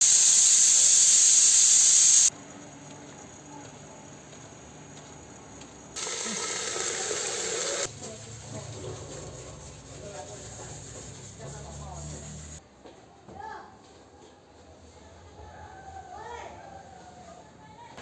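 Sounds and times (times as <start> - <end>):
loud steady hiss: 0.0 - 2.4, 6.0 - 7.9.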